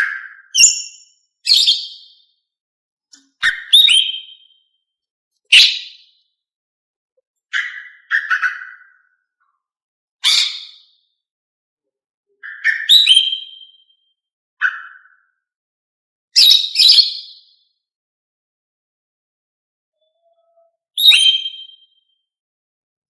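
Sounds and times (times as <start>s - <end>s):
bird whistled chirps: 0.0s - 2.1s, 3.4s - 4.6s, 5.5s - 6.0s, 12.4s - 14.0s, 16.4s - 17.3s, 20.0s - 22.0s.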